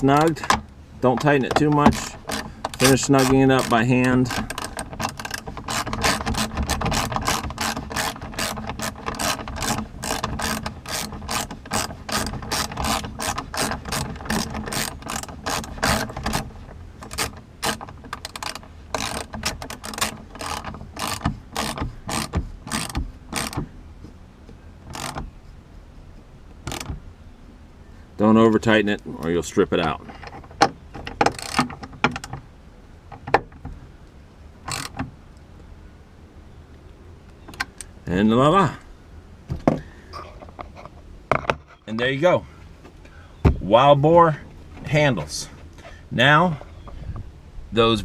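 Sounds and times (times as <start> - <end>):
socket ratchet clicking: 0.2 - 23.7, 34.7 - 35.0.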